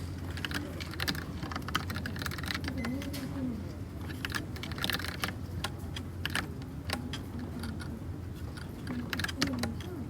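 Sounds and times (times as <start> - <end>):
mechanical keyboard typing: 0.3 - 3.1, 4.1 - 7.9, 8.6 - 10.0.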